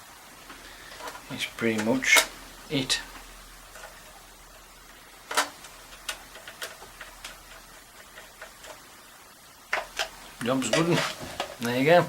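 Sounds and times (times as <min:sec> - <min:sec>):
clicks and knocks of radio casing: 0:05.3 - 0:08.8, 0:09.7 - 0:11.8.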